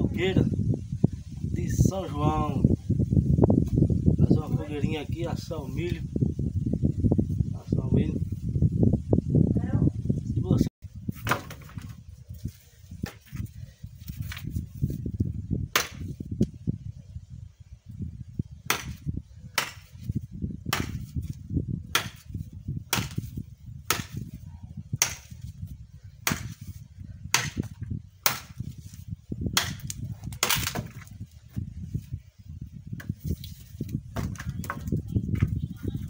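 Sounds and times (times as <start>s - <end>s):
axe chopping wood: 11.1s - 11.9s, 13.0s - 13.4s, 15.7s - 16.2s, 18.6s - 25.6s, 26.2s - 31.1s, 34.1s - 35.0s.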